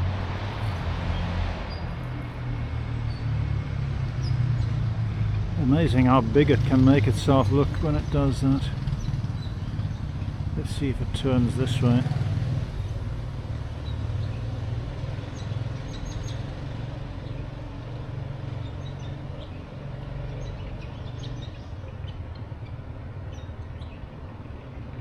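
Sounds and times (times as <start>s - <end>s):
distant road traffic rumble: 0.0s - 25.0s
small birds chirping: 4.1s - 25.0s.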